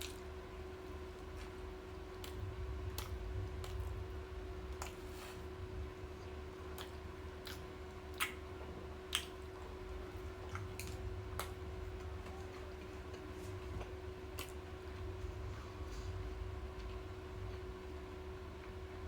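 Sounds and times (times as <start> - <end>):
person chewing with wet smacks: 0.0 - 17.9
steady low hum: 0.0 - 19.0.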